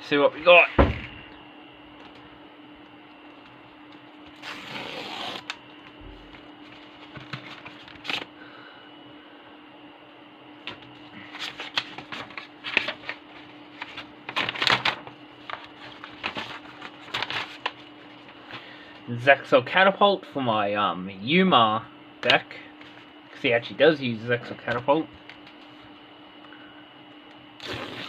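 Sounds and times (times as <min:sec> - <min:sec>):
faint steady hum: 0:00.0 - 0:28.0
paper packaging rustling: 0:06.2 - 0:08.3, 0:10.7 - 0:18.7.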